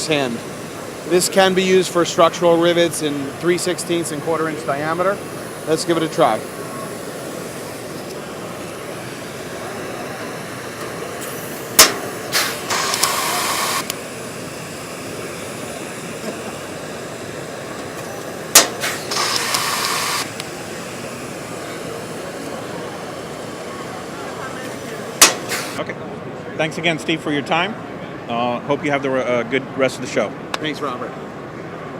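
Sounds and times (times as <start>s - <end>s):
rivet tool air hiss: 0.0s - 25.8s
rivet mandrel snapping: 11.8s - 13.1s, 18.6s - 19.6s.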